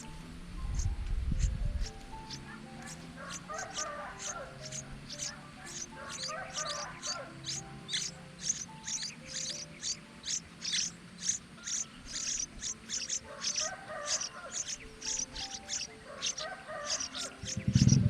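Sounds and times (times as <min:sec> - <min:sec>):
baby birds chirping: 0:00.0 - 0:18.0
soft background music: 0:00.0 - 0:18.0.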